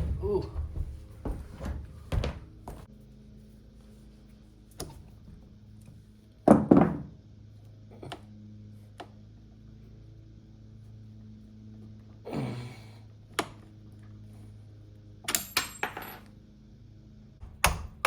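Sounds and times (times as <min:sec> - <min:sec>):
heavy thunks: 0:00.0 - 0:02.9.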